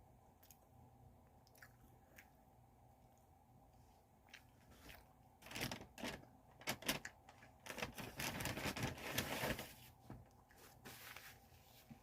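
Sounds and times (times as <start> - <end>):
crunchy eating noises: 0.3 - 2.5, 4.2 - 8.8.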